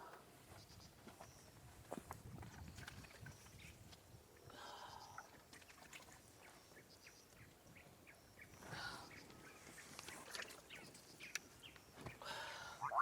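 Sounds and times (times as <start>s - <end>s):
forest wildlife chirps and clicks: 4.9s - 12.2s
louder animal calls: 12.8s - 13.0s.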